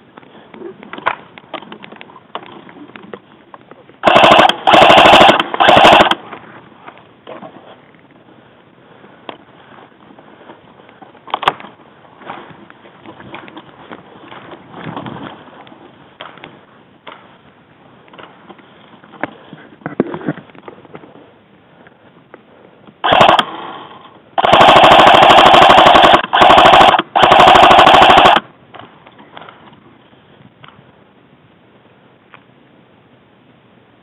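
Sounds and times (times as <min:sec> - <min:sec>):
airsoft gun firing full auto: 0:04.0 - 0:06.2, 0:23.0 - 0:23.8, 0:24.4 - 0:28.5
faint rustling: 0:06.2 - 0:23.0.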